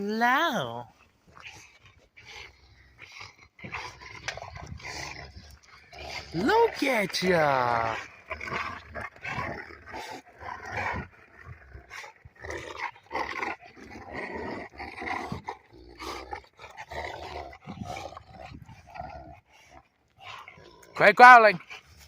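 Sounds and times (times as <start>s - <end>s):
dog growling: 0.8s - 21.0s.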